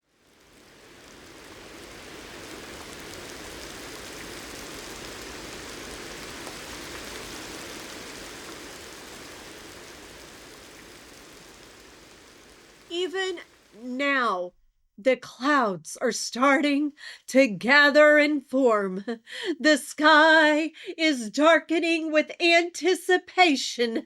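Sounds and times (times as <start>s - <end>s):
steady rain falling: 0.0s - 14.2s.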